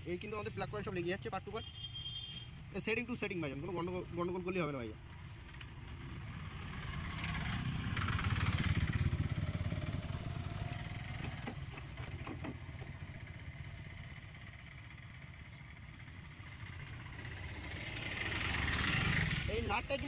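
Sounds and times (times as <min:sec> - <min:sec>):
vehicle engine rumbling past: 0:06.0 - 0:19.6.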